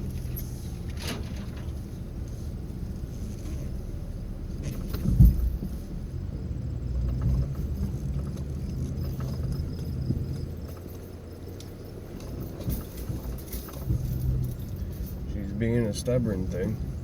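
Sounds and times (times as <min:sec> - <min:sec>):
truck engine straining under load: 0:00.0 - 0:17.0
heavy low thud: 0:05.0 - 0:05.7.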